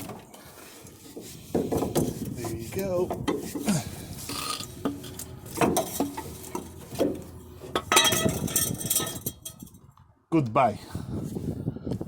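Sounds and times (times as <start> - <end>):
metallic clinks and knocks: 4.6 - 9.8.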